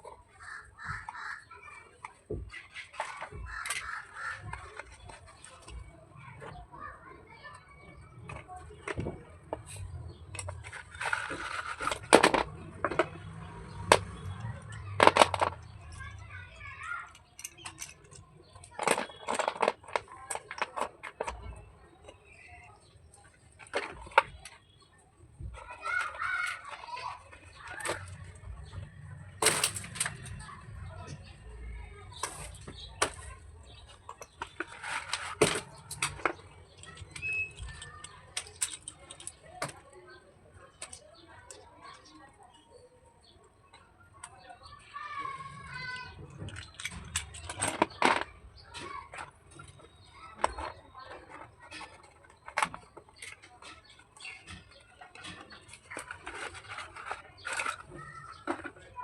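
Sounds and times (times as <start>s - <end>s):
pencils clicking together: 8.2s - 22.4s, 32.0s - 40.0s, 45.8s - 58.8s.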